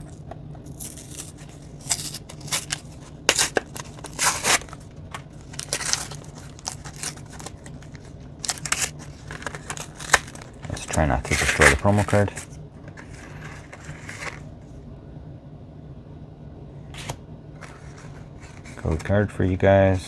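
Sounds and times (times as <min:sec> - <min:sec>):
plastic packaging crackling and tearing: 0:00.0 - 0:14.5.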